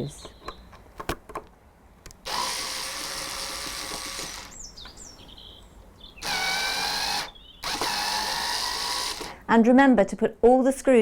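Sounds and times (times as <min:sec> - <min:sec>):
power drill whining: 0:02.2 - 0:04.6, 0:06.2 - 0:09.5.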